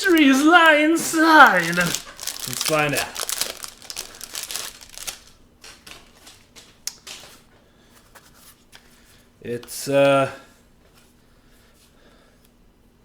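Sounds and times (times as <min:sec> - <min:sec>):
plastic packaging crinkling: 0:00.0 - 0:07.3.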